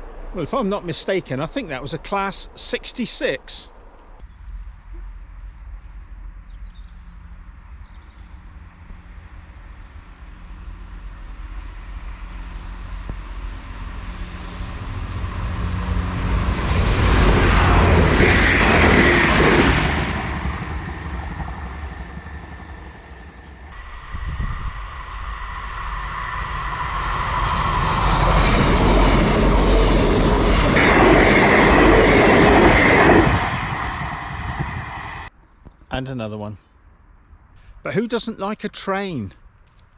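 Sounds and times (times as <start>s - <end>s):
train approaching: 9.0s - 35.3s
passenger train passing: 9.8s - 35.3s.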